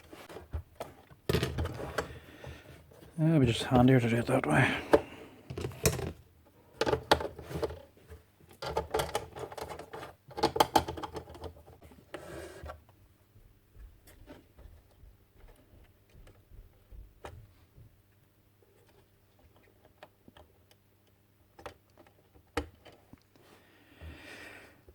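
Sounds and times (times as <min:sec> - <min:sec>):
small parts clicking and rattling: 0:08.6 - 0:11.6.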